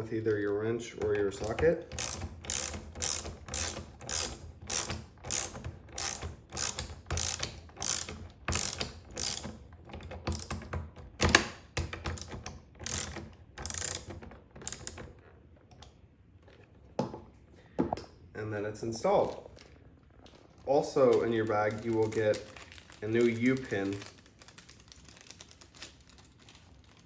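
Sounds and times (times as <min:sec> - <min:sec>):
socket ratchet clicking: 0:01.4 - 0:09.6, 0:10.3 - 0:15.0.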